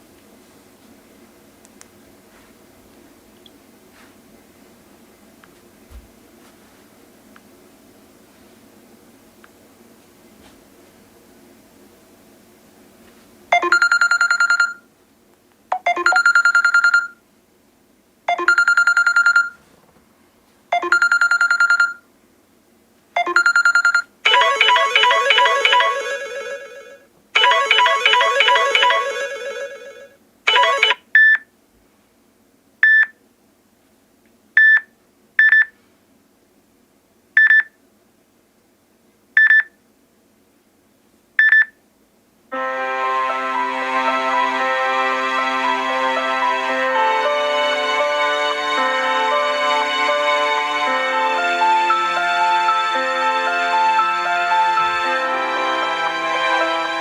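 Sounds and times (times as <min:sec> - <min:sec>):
electronic ringtone: 0:13.6 - 0:14.8, 0:15.8 - 0:17.2, 0:18.3 - 0:19.6, 0:20.8 - 0:22.0, 0:23.2 - 0:31.0
short busy ringtone melody: 0:13.6 - 0:14.8, 0:15.8 - 0:17.1, 0:18.3 - 0:19.5, 0:20.8 - 0:22.0, 0:23.2 - 0:31.0.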